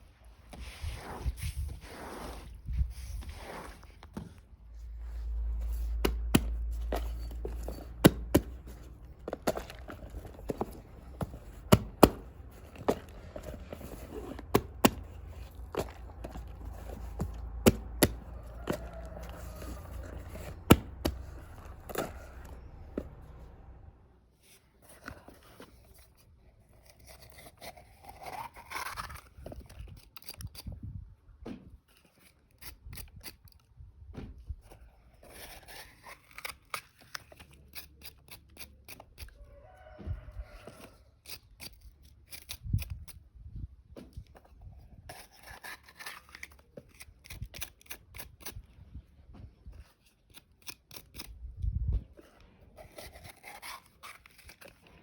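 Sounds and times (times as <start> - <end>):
peppers snipping and tearing: 7.8 - 23.3, 26.8 - 30.8, 35.3 - 39.4, 40.8 - 43.2, 45.1 - 48.7, 49.8 - 51.4, 52.8 - 55.0.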